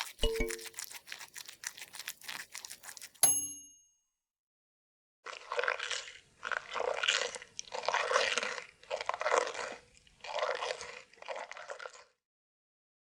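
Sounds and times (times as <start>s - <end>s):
rabbit crunching food: 0.0s - 3.2s.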